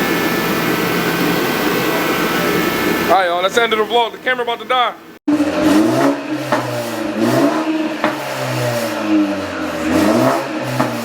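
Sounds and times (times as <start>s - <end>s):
car engine revving: 0.0s - 3.9s, 5.3s - 11.0s
exhaust pops: 5.3s - 11.0s.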